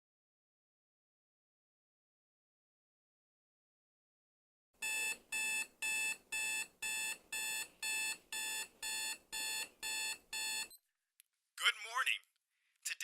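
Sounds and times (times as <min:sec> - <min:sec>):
electronic alarm clock beeping: 0:04.8 - 0:10.8.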